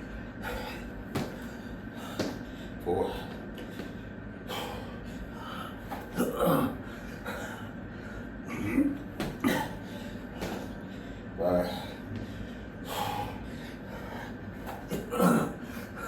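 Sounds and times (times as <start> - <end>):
man breathing hard and gasping: 0.1 - 8.5, 9.3 - 16.0
thuds of landing on floor: 1.2 - 1.4
man grunting: 2.8 - 3.4, 5.9 - 7.5, 8.5 - 10.7, 11.4 - 12.0, 14.7 - 16.0.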